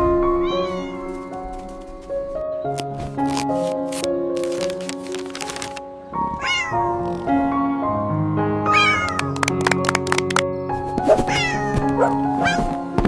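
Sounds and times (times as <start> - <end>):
light background music: 0.0 - 13.0
cat meowing: 0.3 - 2.1, 6.3 - 7.3, 8.6 - 9.4, 11.0 - 12.9.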